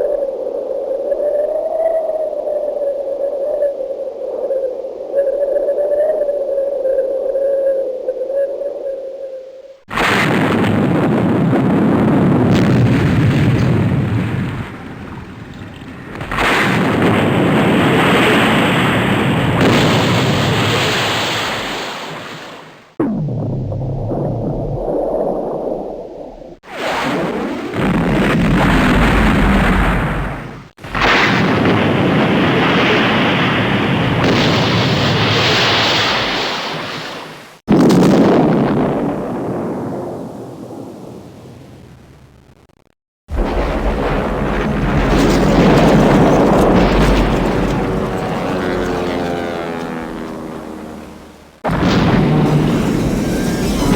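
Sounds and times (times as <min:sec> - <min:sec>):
rumbling blasts: 0:09.9 - 0:21.7, 0:23.0 - 0:36.0, 0:37.7 - 0:42.3, 0:43.3 - 0:53.9
dense noisy rumble: 0:43.3 - 0:53.9.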